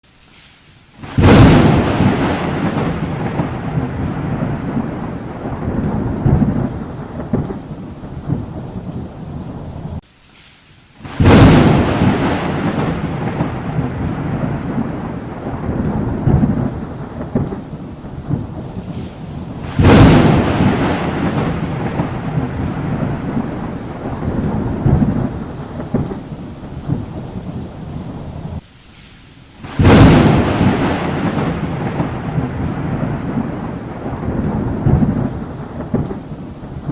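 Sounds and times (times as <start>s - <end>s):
steady rain: 0.0s - 36.9s
thunderclaps rolling into rumble: 1.0s - 10.0s, 11.0s - 28.6s, 29.6s - 36.9s.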